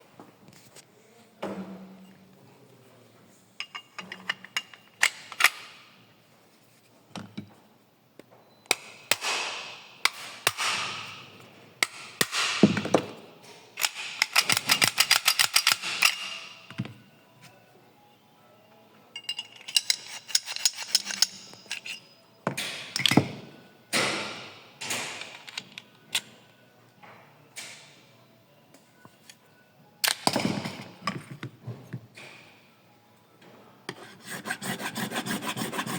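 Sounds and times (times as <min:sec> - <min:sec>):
metal gun parts clicking: 0:03.6 - 0:05.8, 0:13.8 - 0:16.6, 0:19.2 - 0:22.1, 0:24.9 - 0:26.4, 0:30.0 - 0:31.2.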